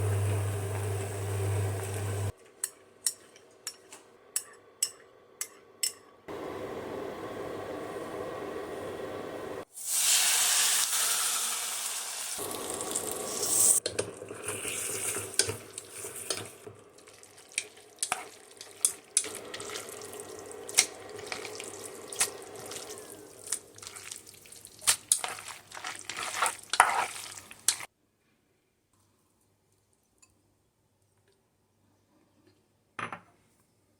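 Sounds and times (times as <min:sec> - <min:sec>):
hot oil sizzling: 0:00.0 - 0:02.3, 0:09.6 - 0:27.9.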